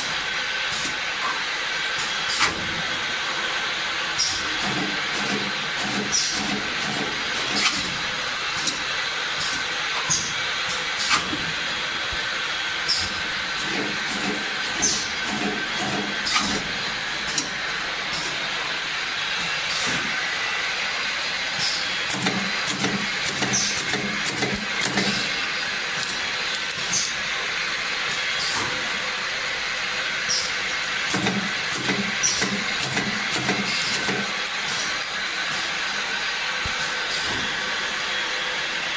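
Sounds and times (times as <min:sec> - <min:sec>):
filling machine hissing: 0:00.0 - 0:38.9
sharp machine clicks: 0:22.1 - 0:25.3.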